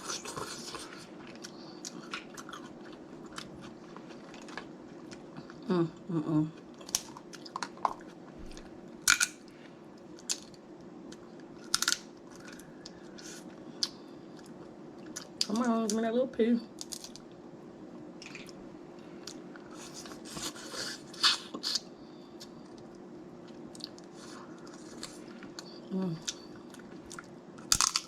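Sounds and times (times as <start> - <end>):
chewing: 0.0 - 5.6
crab shells cracking: 11.6 - 13.0, 16.8 - 17.2, 27.6 - 28.0.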